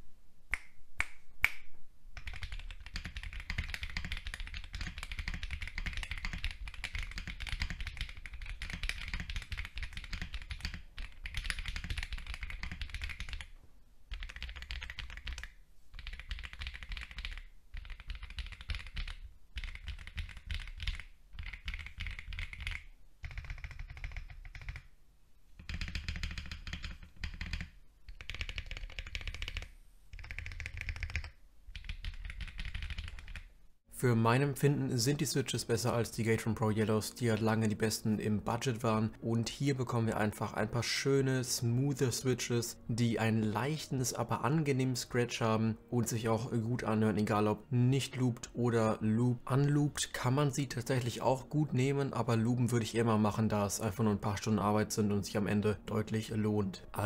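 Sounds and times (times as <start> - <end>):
mechanical keyboard keystrokes clacking: 2.2 - 13.5, 14.1 - 24.9.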